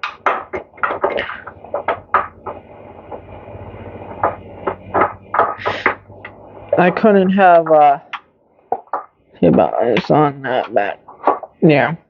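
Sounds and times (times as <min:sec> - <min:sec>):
metal engine parts knocking and clicking: 0:00.0 - 0:03.4.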